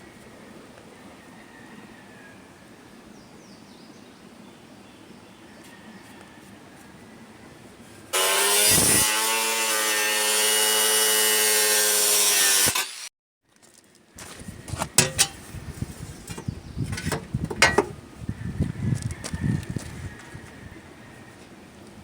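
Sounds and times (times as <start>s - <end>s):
power tool cutting metal: 8.2s - 13.1s
metal pieces clanking: 15.0s - 15.4s, 16.3s - 18.0s.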